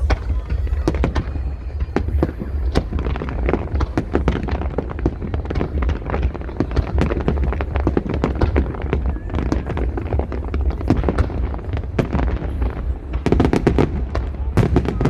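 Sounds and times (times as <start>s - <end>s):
continuous low rumble: 0.0s - 15.0s
fireworks bangs and crackles: 0.0s - 15.0s.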